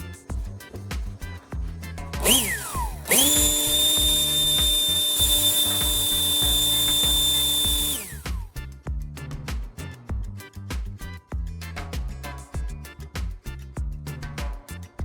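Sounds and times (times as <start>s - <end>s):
background music with steady beat: 0.0s - 15.0s
power tool motor whining: 2.2s - 8.5s.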